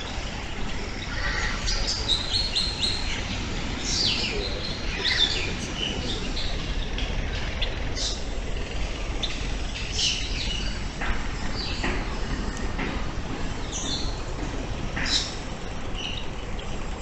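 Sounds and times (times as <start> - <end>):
birds chirping: 0.0 - 17.0
low background rumble: 0.0 - 17.0.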